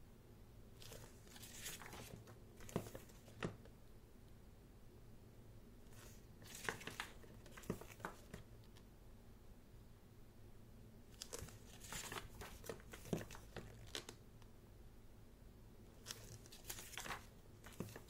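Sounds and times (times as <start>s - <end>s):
book pages turning: 0.8s - 3.7s, 5.9s - 8.5s, 11.1s - 14.2s, 16.0s - 18.0s.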